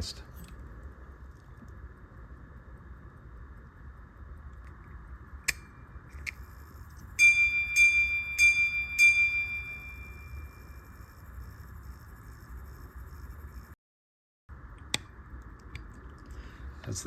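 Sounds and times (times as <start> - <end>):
pocket watch gong ringing: 7.2 - 12.3.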